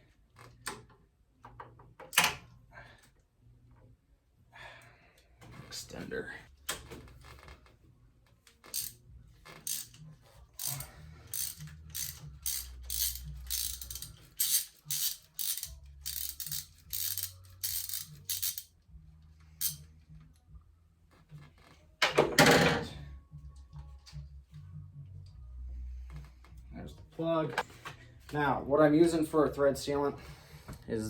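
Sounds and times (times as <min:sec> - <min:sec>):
ratchet pawl clicking: 0:08.6 - 0:10.0, 0:10.6 - 0:18.7, 0:19.6 - 0:19.8.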